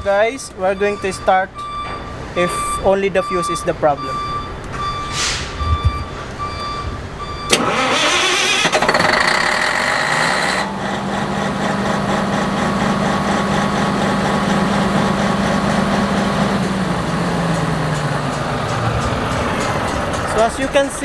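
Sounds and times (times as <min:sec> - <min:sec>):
diesel generator engine running: 0:00.0 - 0:21.0
starter cranking diesel engine: 0:05.8 - 0:21.0.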